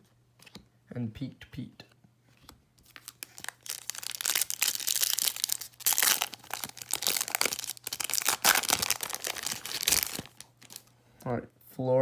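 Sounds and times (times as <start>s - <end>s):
plastic wrapper tearing and crinkling: 2.8s - 10.9s.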